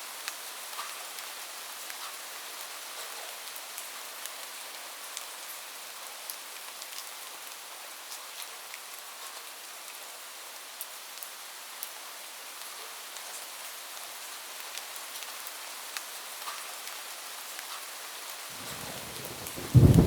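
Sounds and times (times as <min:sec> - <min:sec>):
steady rain hiss: 0:18.2 - 0:20.0
raindrops ticking close by: 0:18.6 - 0:20.0.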